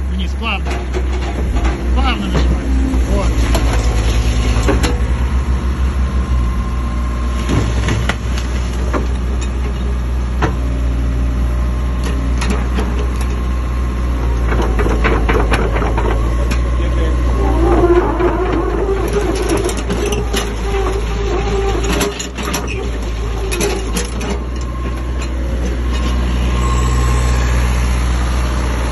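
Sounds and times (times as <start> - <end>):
diesel engine running: 0.0 - 28.9
metal knocks and clanks: 0.4 - 5.1, 14.4 - 26.2
wavering higher tone: 26.0 - 28.0.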